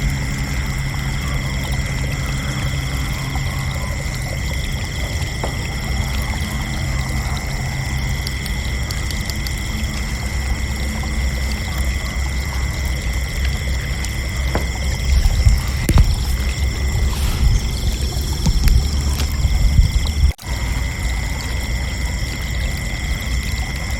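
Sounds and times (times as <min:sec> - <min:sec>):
crickets chirping: 0:00.0 - 0:23.9
low rushing rumble: 0:11.7 - 0:21.8.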